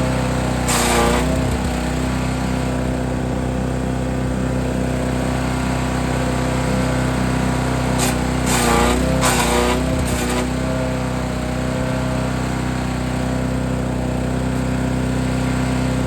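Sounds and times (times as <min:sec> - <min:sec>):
wood chipper engine running: 0:00.0 - 0:16.0
branches being chipped: 0:00.6 - 0:01.8, 0:08.0 - 0:10.6.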